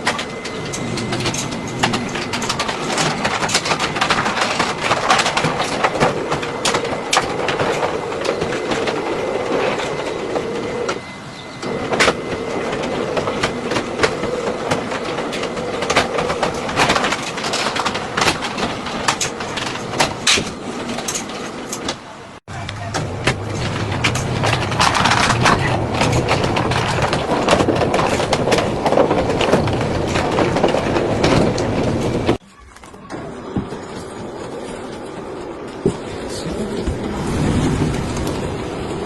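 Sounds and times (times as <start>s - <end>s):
rolling slats clattering: 0.0s - 39.0s.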